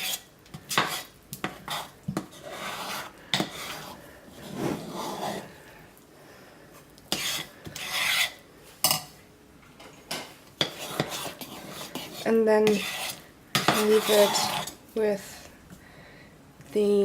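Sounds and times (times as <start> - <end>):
soap paste scraping in pot: 0.0 - 5.7, 7.1 - 8.4, 10.6 - 14.8.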